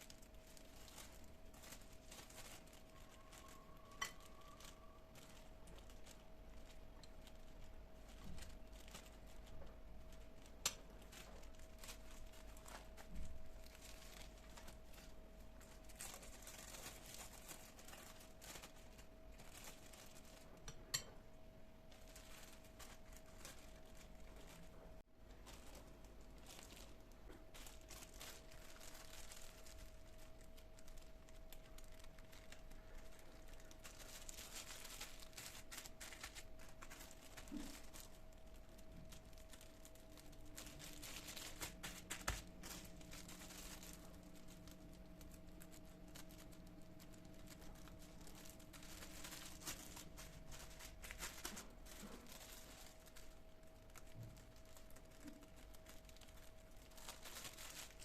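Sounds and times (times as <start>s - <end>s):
kitchen rustling and clicks: 15.6s - 21.3s.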